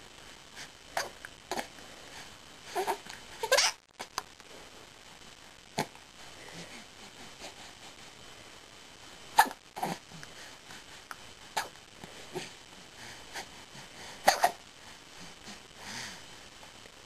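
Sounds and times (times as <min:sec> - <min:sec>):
hiccups: 0:09.4 - 0:10.0, 0:14.2 - 0:14.6.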